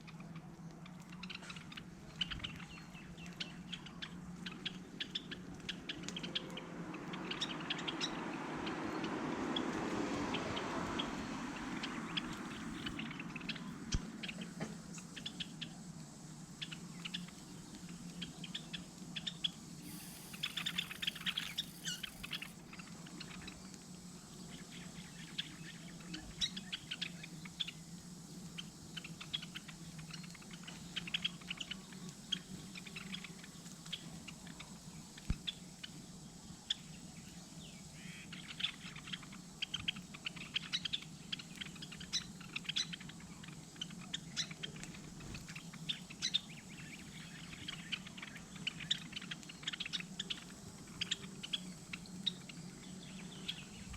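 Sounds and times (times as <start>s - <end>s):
small birds chirping: 0.0s - 53.9s
steady low hum: 9.8s - 25.3s.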